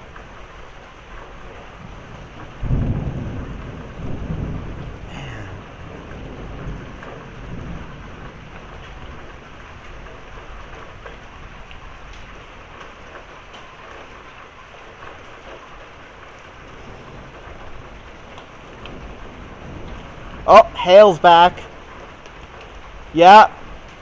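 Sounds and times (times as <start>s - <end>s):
rain pouring: 0.0s - 24.0s
low rumble of thunder: 1.1s - 13.0s, 16.4s - 20.8s.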